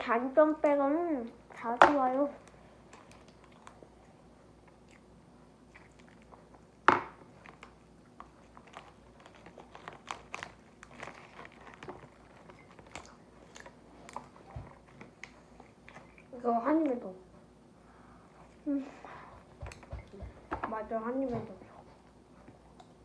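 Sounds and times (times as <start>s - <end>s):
chewing and biting bread: 2.8s - 16.4s.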